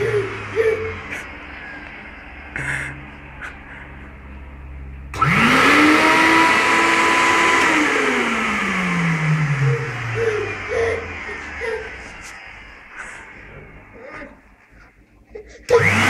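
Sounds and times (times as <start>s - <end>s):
vacuum cleaner motor: 0.0s - 2.8s, 4.9s - 14.3s, 15.7s - 16.0s.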